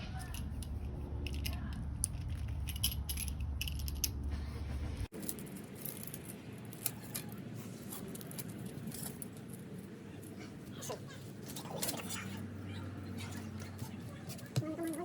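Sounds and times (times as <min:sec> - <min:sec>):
low hum: 0:00.0 - 0:06.8
tool and frame clicking and rattling: 0:00.2 - 0:04.2.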